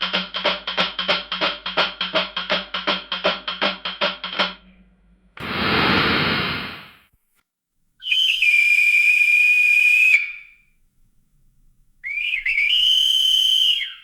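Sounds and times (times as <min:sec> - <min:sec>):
long whistle blasts: 0:08.0 - 0:10.7, 0:12.0 - 0:14.0.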